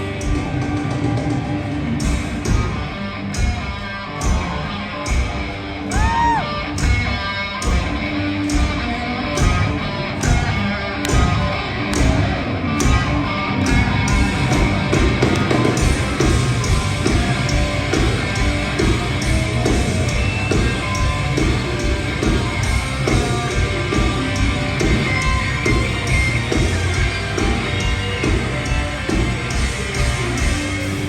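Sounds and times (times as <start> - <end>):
bass guitar: 0.0 - 31.0
distorted electric guitars: 0.0 - 31.0
pounding drums: 0.0 - 31.0
shouted vocals: 5.9 - 6.7.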